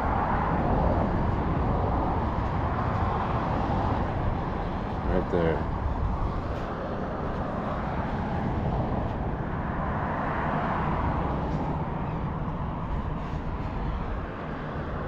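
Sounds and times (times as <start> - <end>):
road traffic passing: 0.0 - 15.0.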